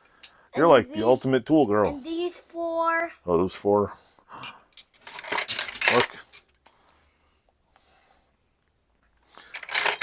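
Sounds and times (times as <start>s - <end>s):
metal wrenches clinking together: 4.4s - 6.6s, 9.5s - 10.0s.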